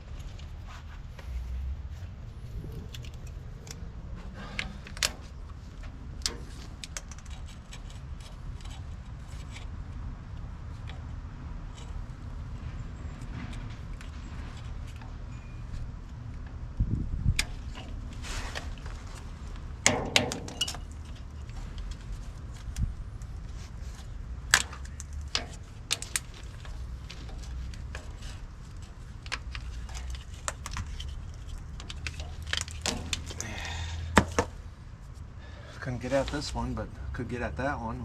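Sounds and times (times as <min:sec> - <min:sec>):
steady low hum: 0:00.0 - 0:38.0.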